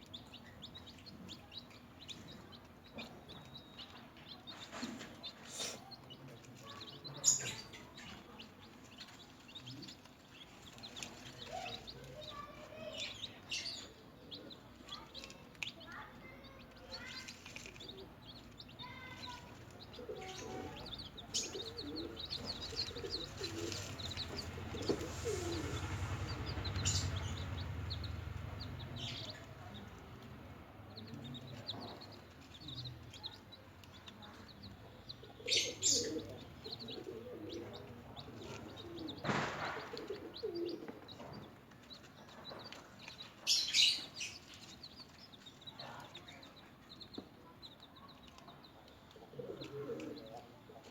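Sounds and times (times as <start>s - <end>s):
chicks peeping: 0.0s - 50.9s
low rumble: 22.2s - 31.0s
sharp knocks or rustles: 39.2s - 40.2s.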